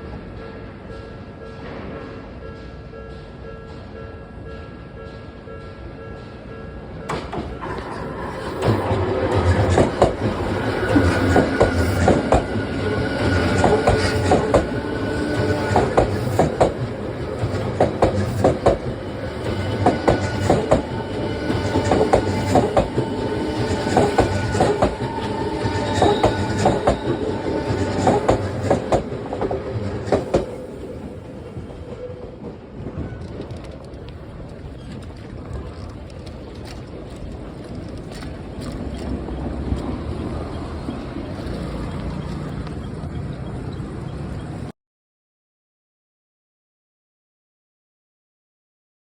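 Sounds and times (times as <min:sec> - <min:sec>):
electric train whine: 0:00.0 - 0:34.4
train wheels clicking on rail joints: 0:00.1 - 0:44.7.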